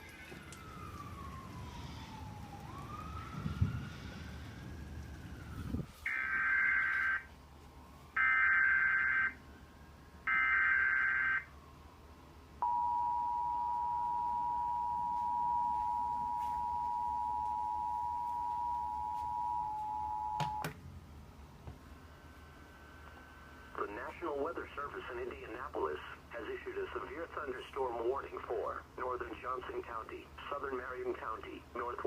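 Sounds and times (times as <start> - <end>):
two-tone alert signal: 12.6 - 20.7.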